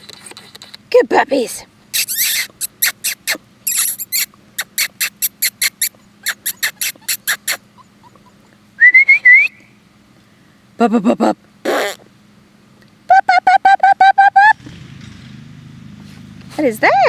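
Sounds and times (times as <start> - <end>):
puppy squeak: 1.9 - 8.5.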